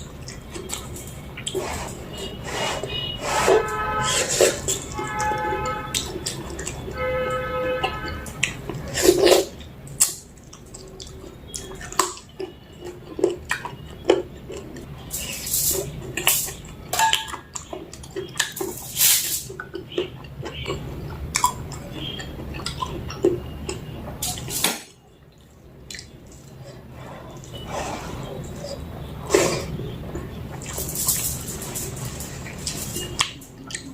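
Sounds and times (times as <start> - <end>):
wet chewing and lip-smacking: 0.0 - 3.1, 4.1 - 7.0, 7.8 - 18.9, 19.5 - 33.9
wet sucking sounds: 1.4 - 4.8.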